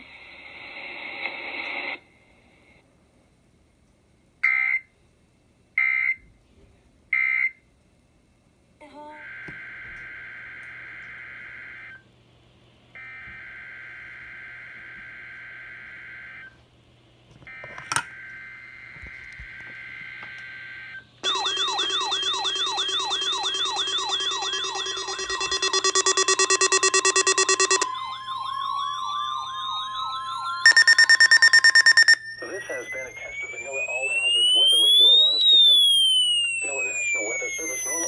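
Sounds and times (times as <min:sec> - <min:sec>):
wavering siren-like alarm tones: 0:09.2 - 0:12.0, 0:13.0 - 0:16.5, 0:18.2 - 0:38.0
pulsing buzz: 0:21.2 - 0:28.2
screechy digital data bursts: 0:21.2 - 0:28.2, 0:28.9 - 0:35.8
steady alert tone with rising glides: 0:21.2 - 0:35.7
loud buzzing tone: 0:23.8 - 0:27.9, 0:30.5 - 0:32.3.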